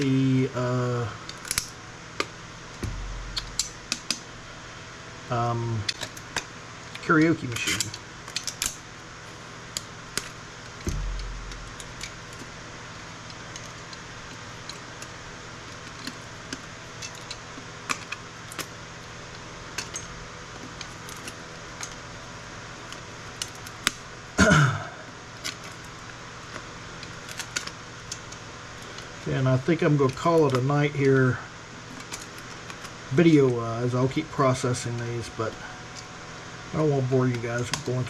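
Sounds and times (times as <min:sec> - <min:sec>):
components pried off circuit boards: 0:01.2 - 0:04.2, 0:09.7 - 0:12.5
low thud: 0:02.8 - 0:03.6, 0:10.9 - 0:11.8.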